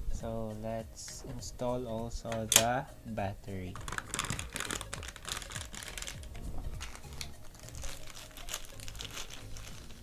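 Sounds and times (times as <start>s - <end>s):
quiet background music: 0.0s - 10.0s
small handling clicks: 2.3s - 2.7s
plastic crinkling: 3.7s - 10.0s.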